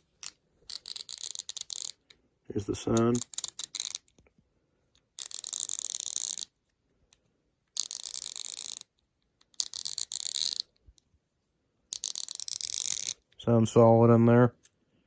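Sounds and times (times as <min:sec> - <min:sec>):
ratchet clicking: 0:00.2 - 0:02.0, 0:03.0 - 0:04.0, 0:05.2 - 0:06.5, 0:07.8 - 0:08.8, 0:09.5 - 0:10.7, 0:11.9 - 0:13.2.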